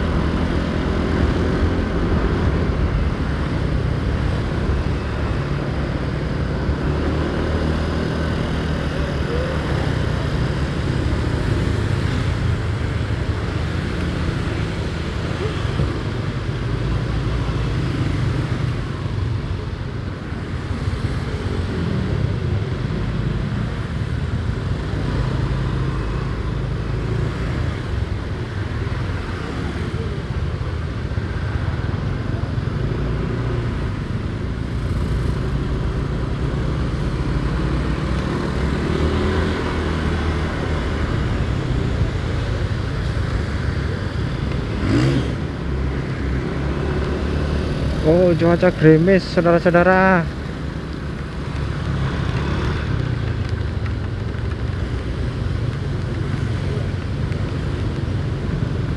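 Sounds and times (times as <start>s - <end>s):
motorcycle engine rumble: 49.7s - 58.9s.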